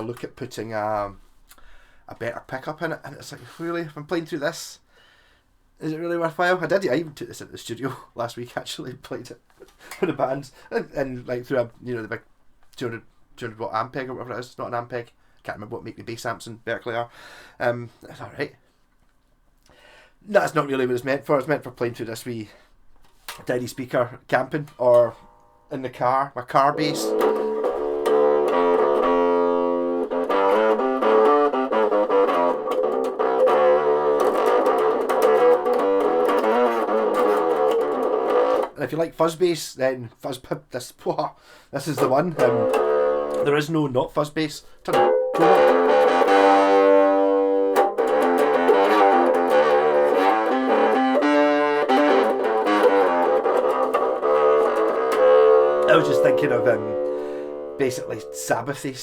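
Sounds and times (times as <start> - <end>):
electric bass through small amp: 26.8 - 38.7, 44.9 - 58.4.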